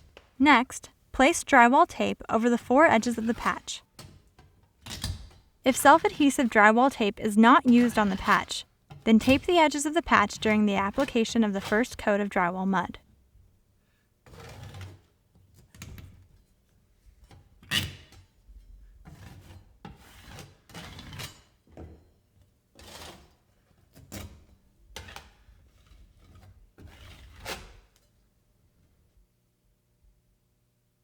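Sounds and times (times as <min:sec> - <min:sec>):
drywall tape rasping and rubbing: 0:25.0 - 0:28.1.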